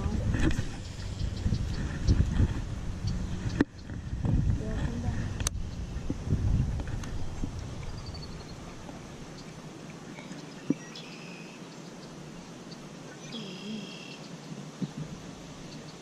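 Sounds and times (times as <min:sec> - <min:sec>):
outdoor background noise: 0:00.0 - 0:16.0
bird calling: 0:07.1 - 0:14.6.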